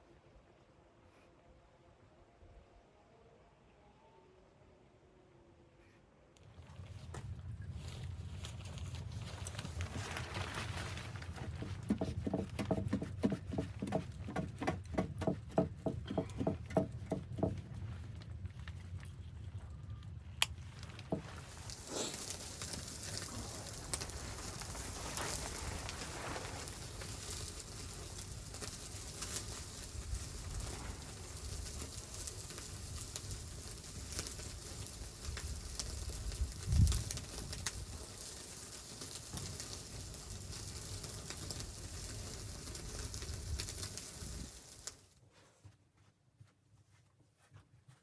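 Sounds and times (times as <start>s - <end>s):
crackling and hissing: 6.4s - 45.2s.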